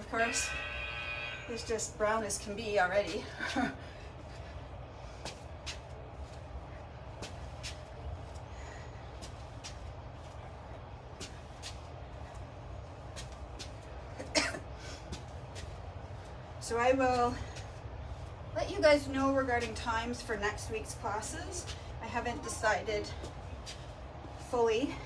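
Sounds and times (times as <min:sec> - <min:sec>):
low outdoor rumble: 0:00.0 - 0:25.0
cough-like sound: 0:14.3 - 0:14.6.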